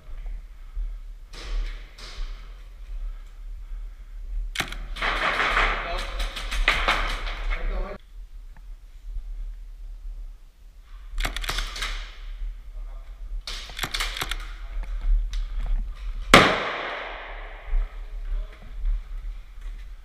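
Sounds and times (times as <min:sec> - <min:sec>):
loud sharp crack: 0:16.3 - 0:17.7.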